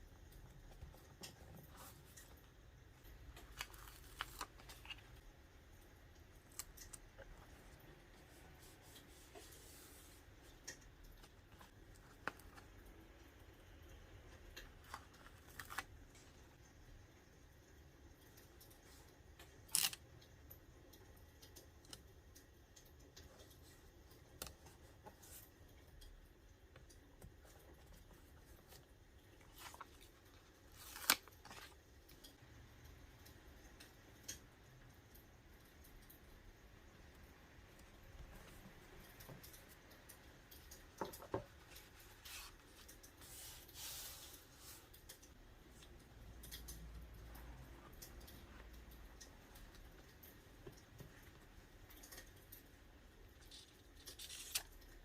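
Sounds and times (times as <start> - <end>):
small paper ticks and clicks: 0.1 - 16.6, 17.7 - 55.0
soft hissing paper rubs: 7.6 - 10.6, 41.6 - 45.2.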